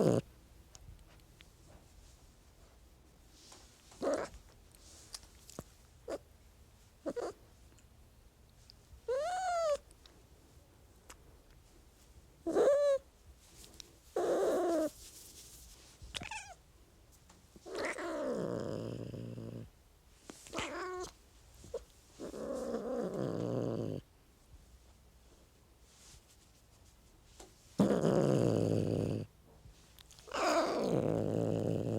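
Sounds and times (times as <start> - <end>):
cat growling: 4.0 - 4.4, 17.6 - 19.7, 20.5 - 21.1, 22.2 - 24.0, 27.8 - 29.3, 30.2 - 31.9.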